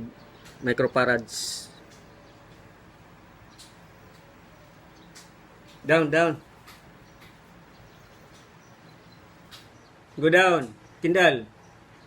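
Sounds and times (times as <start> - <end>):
faint steady hum: 0.0 - 12.0
light ticks: 3.5 - 4.3, 5.0 - 5.9.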